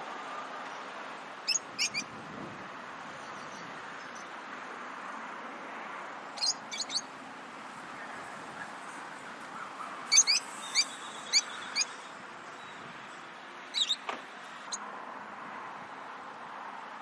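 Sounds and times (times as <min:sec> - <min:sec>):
birds chirping: 0:01.4 - 0:02.1, 0:06.4 - 0:07.1, 0:07.9 - 0:14.8.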